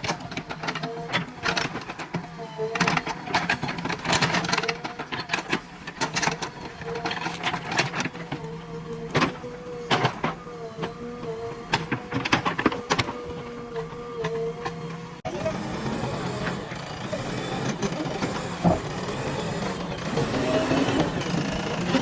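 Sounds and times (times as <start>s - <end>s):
engine and hydraulics whine: 15.2s - 22.0s
sharp knocks and clanks: 18.6s - 19.2s.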